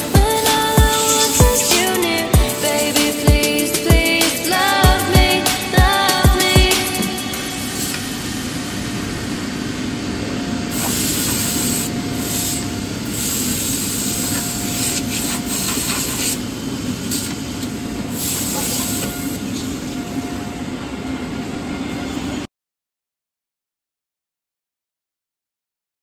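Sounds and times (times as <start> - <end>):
drilling machine running: 0.0 - 3.8
hissing bursts: 0.0 - 8.5, 10.7 - 20.0.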